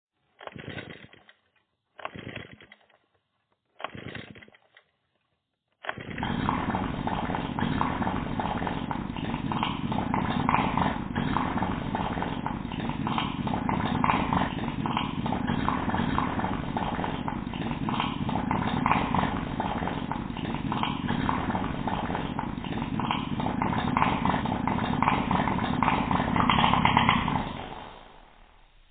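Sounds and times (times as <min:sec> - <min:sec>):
motorcycle engine running: 0:05.9 - 0:28.9.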